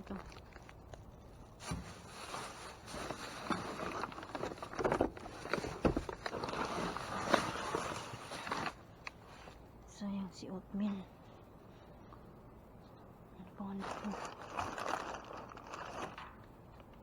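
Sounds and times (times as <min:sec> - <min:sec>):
rummaging rustling: 0:00.0 - 0:09.6, 0:13.7 - 0:17.0
items knocking and clattering: 0:02.9 - 0:08.7.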